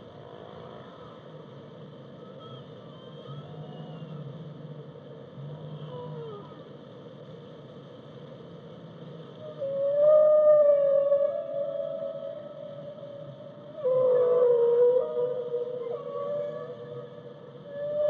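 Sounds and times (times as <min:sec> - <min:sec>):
whale calls: 0:02.2 - 0:04.4, 0:09.4 - 0:18.0.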